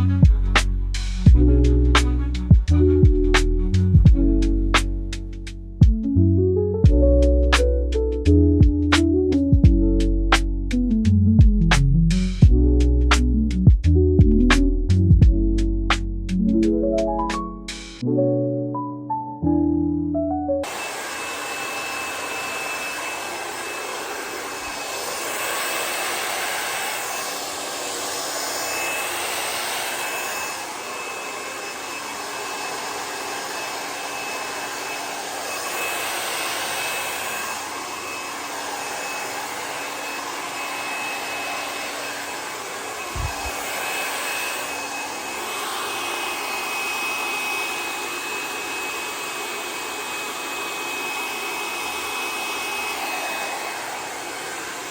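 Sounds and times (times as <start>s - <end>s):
hair dryer blowing air: 0.0s - 4.2s, 20.6s - 54.9s
high motor whine: 20.7s - 54.9s.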